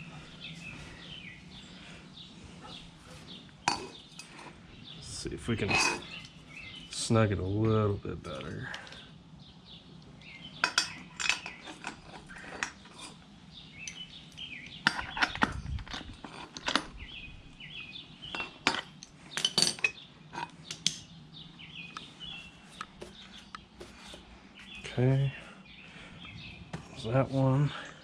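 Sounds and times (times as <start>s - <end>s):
wrench clinking on metal nuts: 10.6s - 13.2s, 18.3s - 20.0s.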